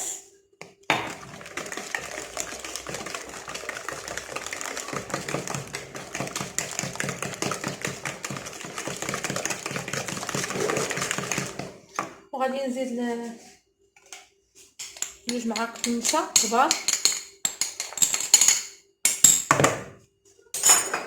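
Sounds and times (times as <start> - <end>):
whisk clicking against bowl: 1.0 - 11.7, 14.9 - 17.8.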